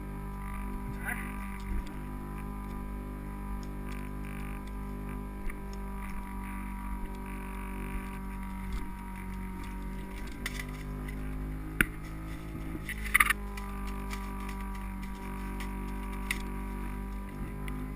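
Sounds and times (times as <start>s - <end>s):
muffled fan whine and hum: 0.0s - 17.9s
rattle of clicks: 3.6s - 17.8s.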